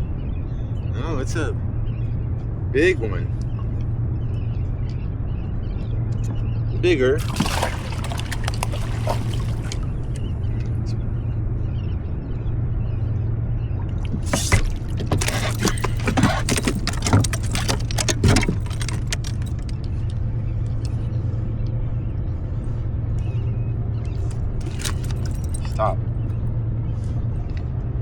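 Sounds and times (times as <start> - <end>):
boat motor humming: 7.2 - 10.5, 13.6 - 21.3
fishing rig clicking and rattling: 14.6 - 20.1.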